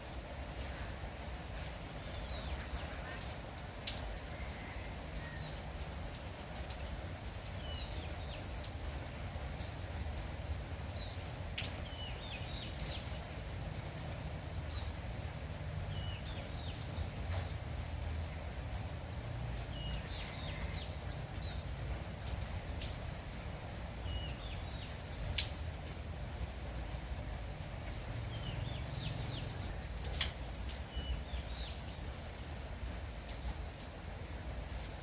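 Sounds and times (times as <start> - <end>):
light rain patter: 0.0 - 35.0
sharp drips: 0.0 - 35.0
small birds chirping: 0.6 - 33.6.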